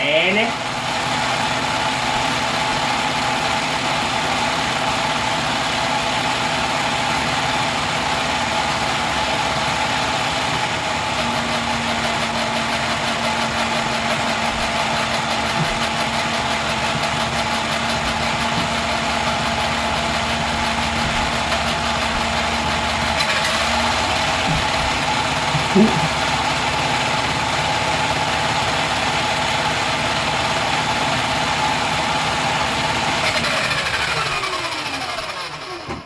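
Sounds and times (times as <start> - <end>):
engine-like running hum: 7.2 - 36.0.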